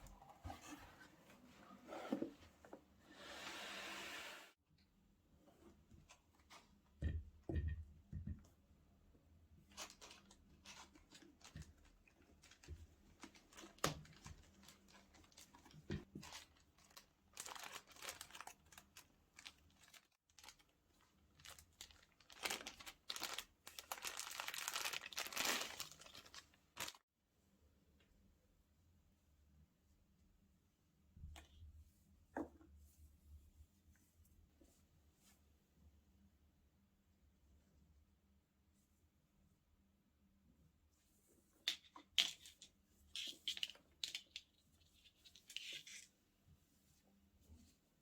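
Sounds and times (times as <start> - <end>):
paper rustling and crinkling: 9.7 - 27.0.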